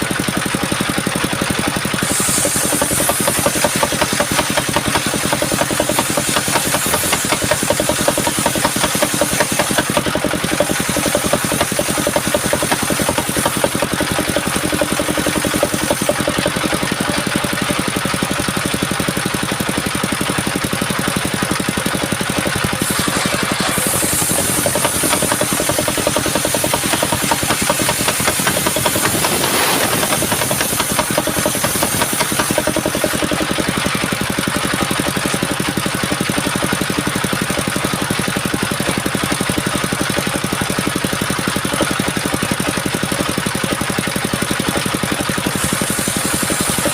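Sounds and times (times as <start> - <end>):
sawmill engine running: 0.0 - 46.9
high hiss: 22.8 - 32.9.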